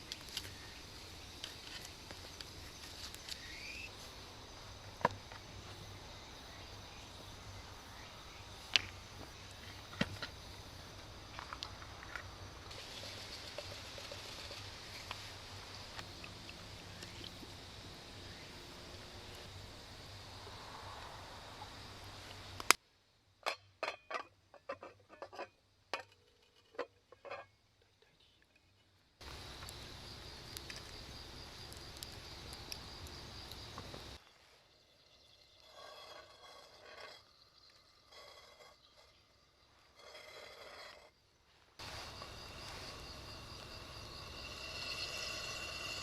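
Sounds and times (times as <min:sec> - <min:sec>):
campfire crackling and popping: 0:29.2 - 0:34.2.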